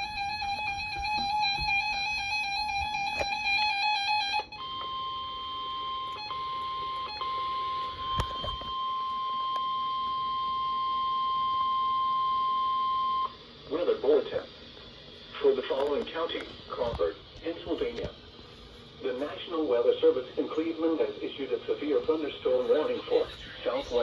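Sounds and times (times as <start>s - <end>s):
long electronic alarm tone: 0.0s - 13.4s
warbling pitched sound: 22.7s - 24.0s.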